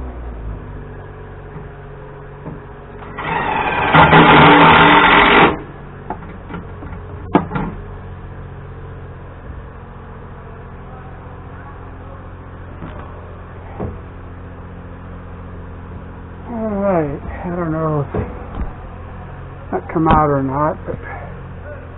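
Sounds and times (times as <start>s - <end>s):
power drill running: 3.0s - 5.7s.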